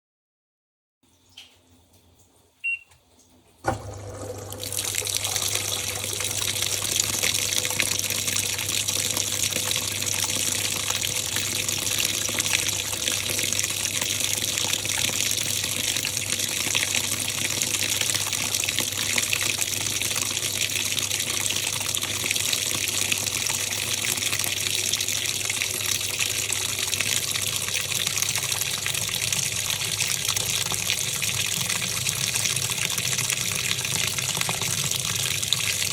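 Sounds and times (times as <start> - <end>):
washing machine hum: 1.3 - 35.9
water filling tub: 1.4 - 35.9
short beep: 2.6 - 2.9.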